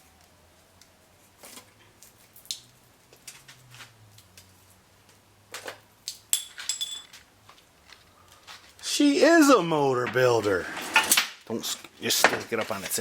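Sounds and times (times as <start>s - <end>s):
metal parts clicking and knocking: 6.4s - 7.1s
sharp metal clanks: 6.4s - 7.1s.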